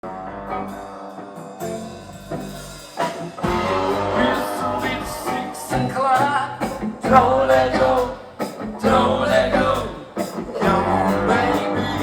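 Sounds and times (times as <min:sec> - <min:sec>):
electric guitar single notes: 0:00.0 - 0:12.0
live rock band playing: 0:00.0 - 0:12.0.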